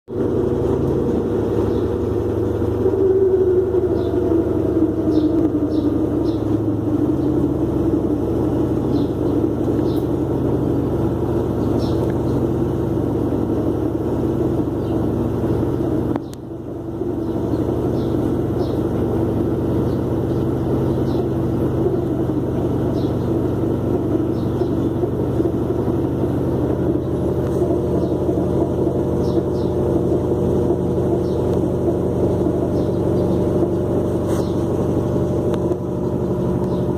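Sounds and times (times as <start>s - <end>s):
engine running: 0.1s - 36.9s.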